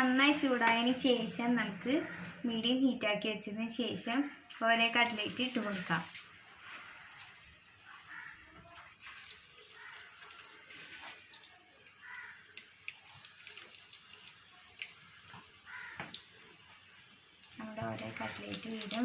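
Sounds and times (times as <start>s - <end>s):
chicken frying in oil: 4.4s - 19.0s
oil popping and crackling: 4.4s - 19.0s.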